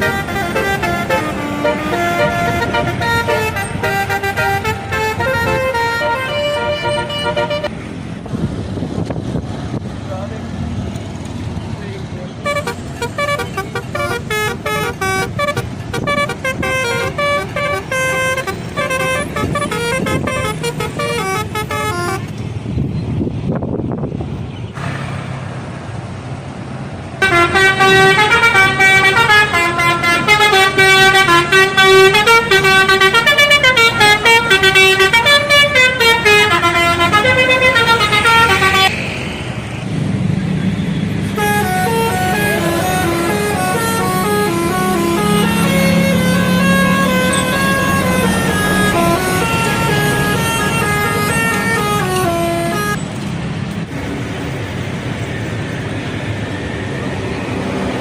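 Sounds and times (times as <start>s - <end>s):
bus musical horn tune: 0.0s - 7.8s, 12.4s - 22.3s, 27.2s - 39.0s, 41.2s - 53.2s
traffic noise: 0.0s - 58.0s.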